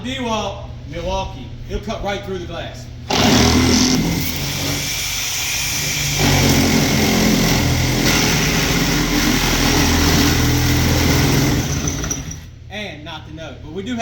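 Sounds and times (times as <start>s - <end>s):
reciprocating saw cutting glass: 3.1s - 12.5s.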